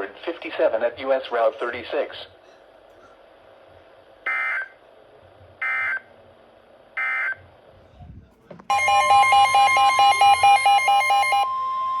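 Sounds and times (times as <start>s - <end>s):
steady warning alarm tone: 4.2s - 4.8s, 5.6s - 6.1s, 7.0s - 7.4s, 8.7s - 12.0s
pulsing alarm beep: 4.3s - 4.7s, 5.6s - 6.0s, 7.0s - 7.4s, 8.7s - 12.0s.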